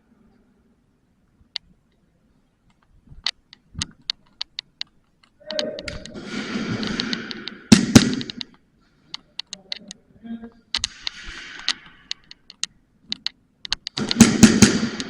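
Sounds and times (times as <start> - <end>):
airsoft pistols firing: 6.2 - 8.5, 13.9 - 15.0.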